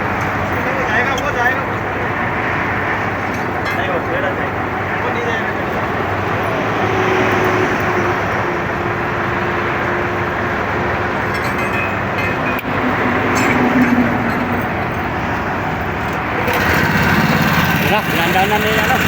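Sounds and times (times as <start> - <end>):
heavy road traffic passing: 0.0 - 19.0.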